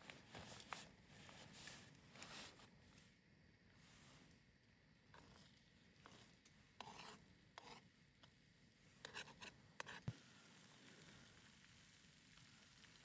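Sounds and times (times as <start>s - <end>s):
handling scrapes and clicks: 5.2s - 7.8s, 9.0s - 10.1s.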